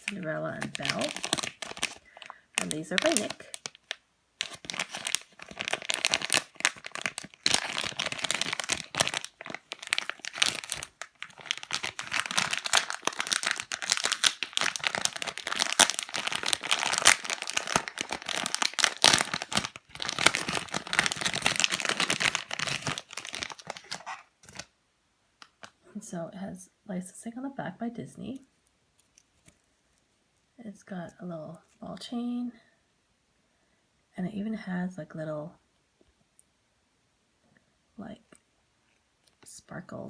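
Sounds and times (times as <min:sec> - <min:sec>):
plastic packaging crinkling: 0:00.0 - 0:24.7, 0:25.4 - 0:25.8.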